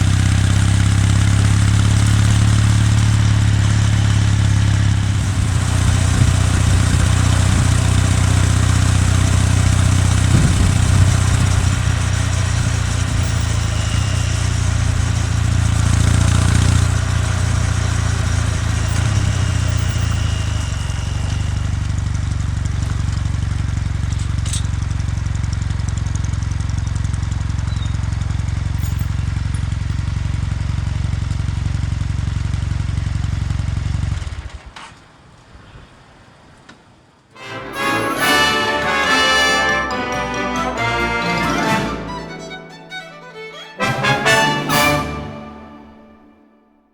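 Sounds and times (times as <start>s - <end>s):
motorcycle engine running: 0.0s - 34.6s.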